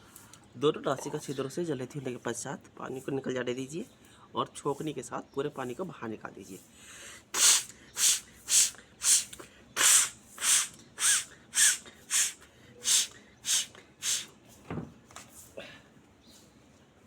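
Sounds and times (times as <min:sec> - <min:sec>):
sharp blows out through nose: 0:07.3 - 0:14.3.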